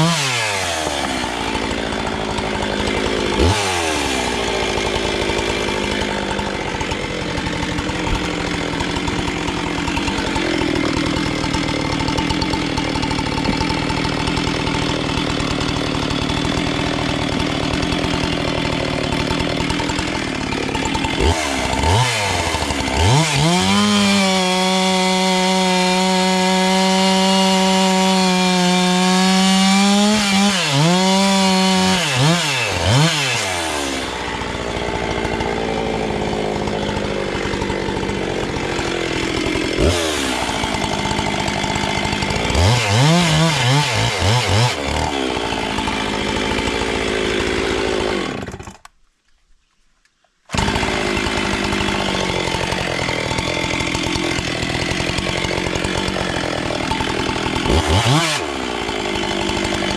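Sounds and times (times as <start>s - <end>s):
chainsaw running: 0.0s - 49.0s, 50.5s - 59.9s.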